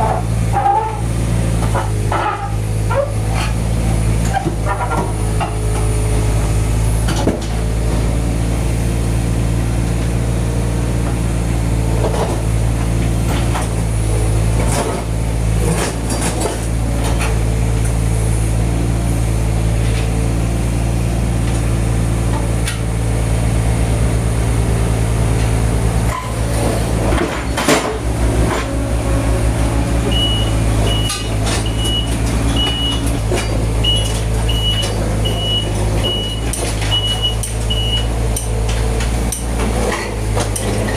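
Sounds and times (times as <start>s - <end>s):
construction machine engine running: 0.0s - 40.9s
knocks and clanks of work: 3.3s - 6.0s, 7.0s - 7.7s, 14.5s - 18.0s, 26.1s - 29.2s, 29.8s - 40.9s
reversing alarm beeping: 30.1s - 33.1s, 33.8s - 38.1s.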